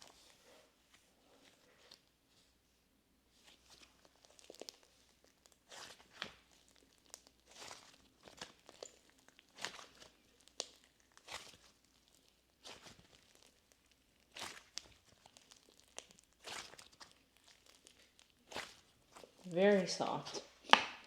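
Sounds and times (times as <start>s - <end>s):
slime squished by hand: 3.4s - 19.4s.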